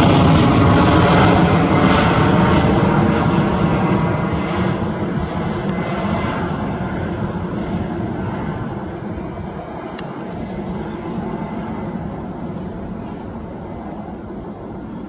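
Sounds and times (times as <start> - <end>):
jet engines rumbling: 0.0 - 15.0
sharp click: 9.2 - 10.4.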